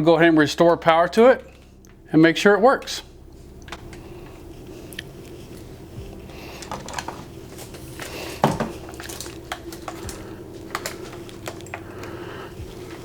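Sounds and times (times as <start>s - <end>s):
steady low hum: 0.0s - 13.0s
clicks and knocks of hands working: 6.5s - 13.0s.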